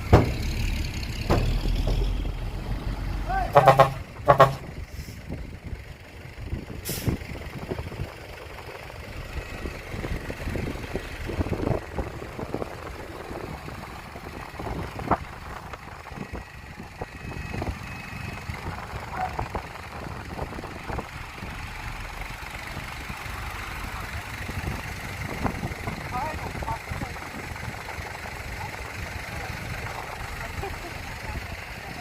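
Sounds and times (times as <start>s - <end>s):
knocks and clanks: 0.0s - 2.2s
diesel engine idling: 0.0s - 32.0s.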